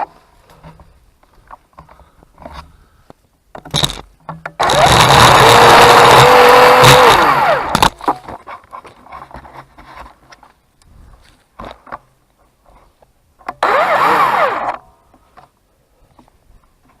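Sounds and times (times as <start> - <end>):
clicks and crackles: 3.1 - 5.6
electric chainsaw motor whirring: 4.6 - 7.9, 13.6 - 14.8.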